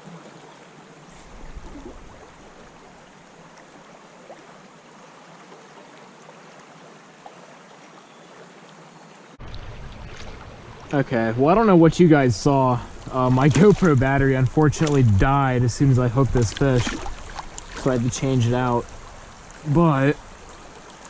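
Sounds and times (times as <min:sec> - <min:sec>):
creek water flowing: 0:00.0 - 0:21.0.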